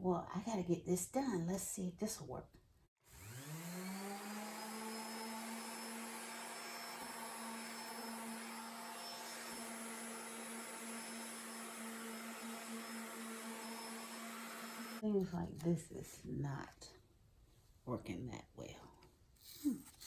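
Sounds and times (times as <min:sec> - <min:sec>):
orbital sander running: 0:03.1 - 0:15.0.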